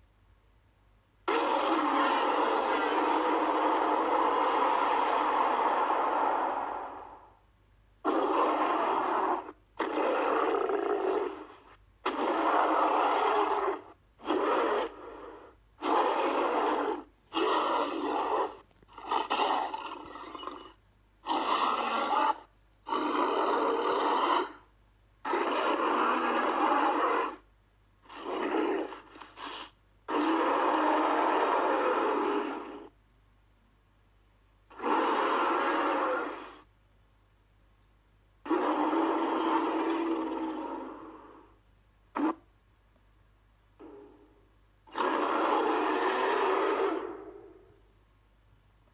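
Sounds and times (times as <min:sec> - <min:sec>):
monster roars and grunts: 0:01.3 - 0:07.0, 0:08.1 - 0:20.4, 0:30.1 - 0:32.9, 0:34.7 - 0:36.6, 0:38.4 - 0:41.4, 0:44.9 - 0:47.4.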